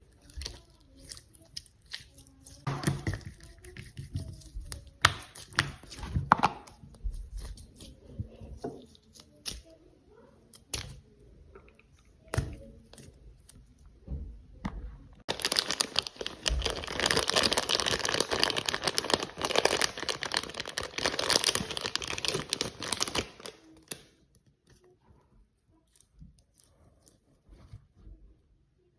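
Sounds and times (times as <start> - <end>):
squishy toy crinkling and crackling: 15.3 - 24.2.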